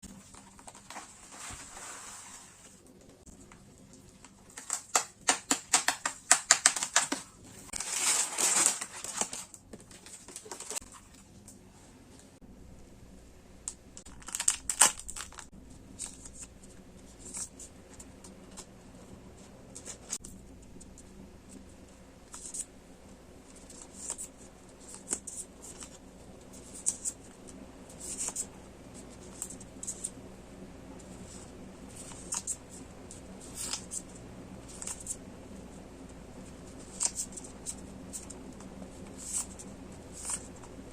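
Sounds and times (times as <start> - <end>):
packaging rustling: 6.3 - 11.0, 14.0 - 16.5
packaging crackling: 14.0 - 16.4.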